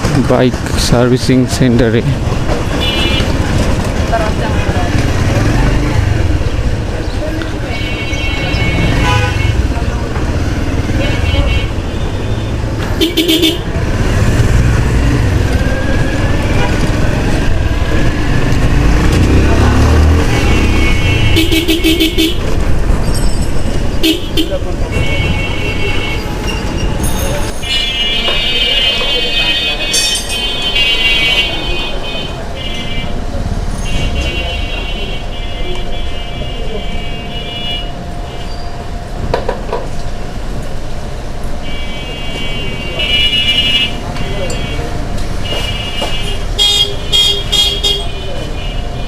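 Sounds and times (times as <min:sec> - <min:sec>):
road traffic engine rumble: 0:00.0 - 0:49.0
vehicle horns: 0:02.6 - 0:03.6, 0:07.6 - 0:14.5, 0:16.4 - 0:22.6, 0:24.0 - 0:38.8, 0:41.6 - 0:49.0.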